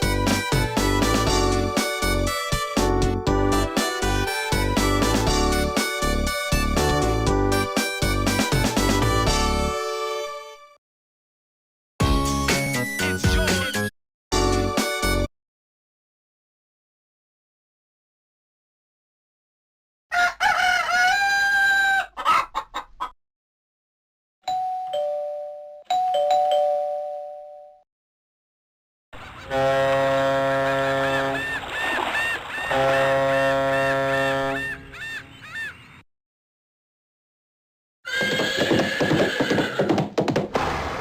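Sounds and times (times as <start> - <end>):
rooster crow ringtone: 20.1 - 22.4
ding-dong doorbell chime: 24.5 - 27.8
synth ringtone melody: 24.5 - 27.8.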